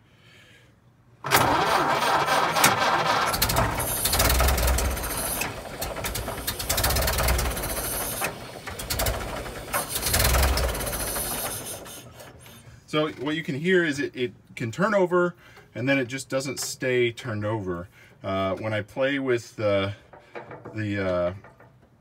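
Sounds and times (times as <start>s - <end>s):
car engine starting and surging: 1.2s - 12.6s.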